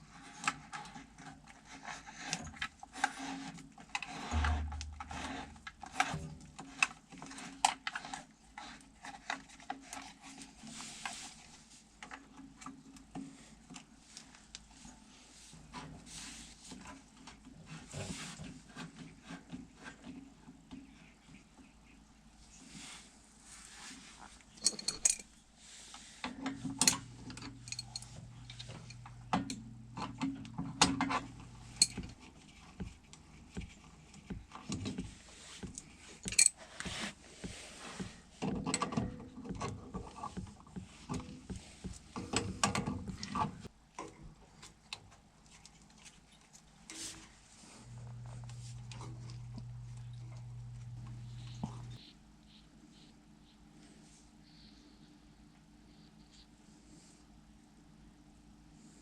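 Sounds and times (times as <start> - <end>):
low steady hum: 3.9 - 6.9, 20.1 - 44.7, 45.3 - 59.0
metal clinking and clanking: 26.8 - 29.6.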